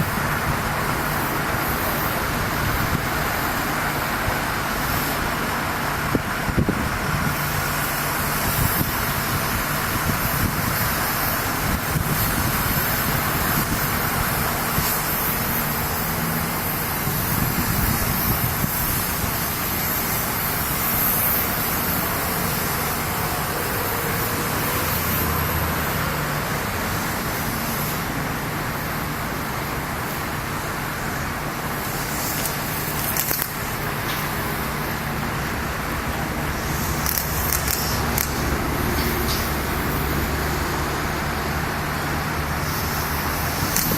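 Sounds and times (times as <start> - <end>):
engine running with hum and hiss: 0.0 - 43.9.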